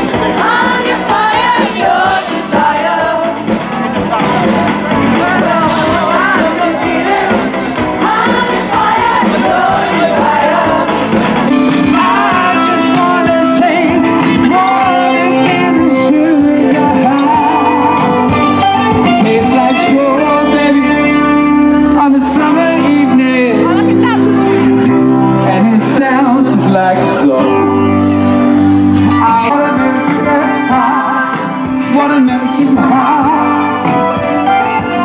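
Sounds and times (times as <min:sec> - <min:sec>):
music with singing voice: 0:00.0 - 0:35.0.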